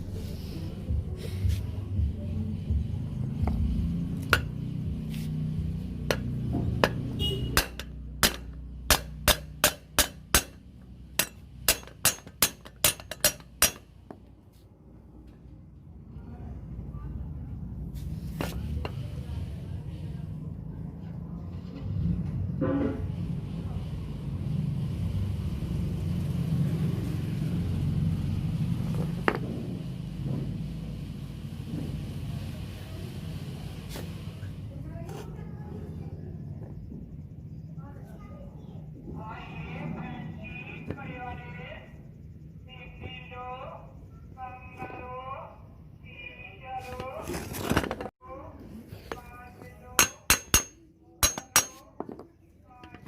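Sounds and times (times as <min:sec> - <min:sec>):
hammer striking metal: 0:04.3 - 0:04.6, 0:06.0 - 0:14.0, 0:50.0 - 0:51.9.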